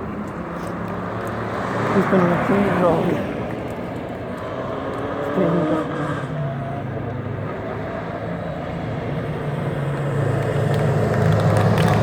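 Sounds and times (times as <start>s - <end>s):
race car engine low revs: 4.4s - 8.3s.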